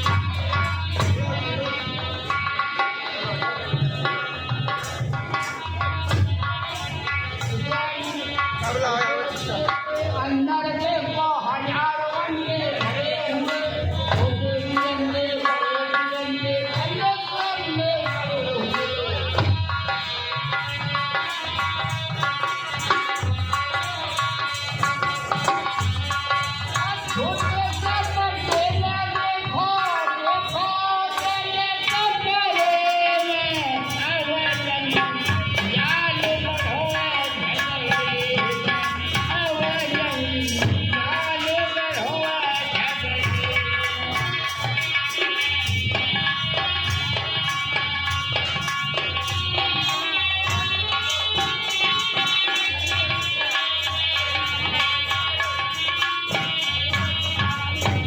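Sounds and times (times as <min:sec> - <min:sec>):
tabla playing a steady rhythm: 0:00.0 - 0:58.0
hand drum beat: 0:03.2 - 0:10.2, 0:31.3 - 0:58.0
person singing: 0:26.7 - 0:44.5.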